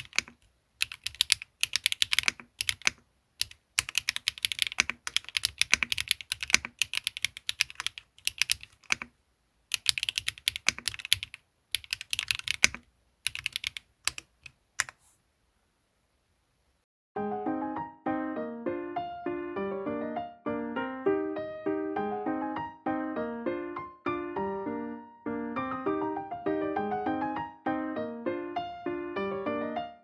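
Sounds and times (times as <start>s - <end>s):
mechanical keyboard typing: 0.0s - 9.1s, 9.7s - 15.1s.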